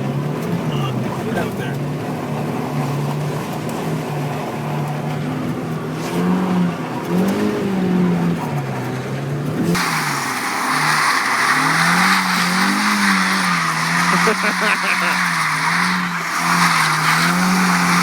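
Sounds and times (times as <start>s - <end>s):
car engine revving: 0.0s - 18.0s
tyres hissing on wet road: 9.6s - 18.0s.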